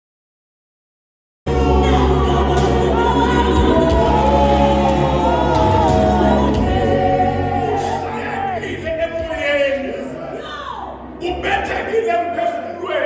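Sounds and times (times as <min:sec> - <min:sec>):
sustained keyboard accompaniment: 0:01.5 - 0:10.2
gospel choir singing: 0:01.5 - 0:13.0.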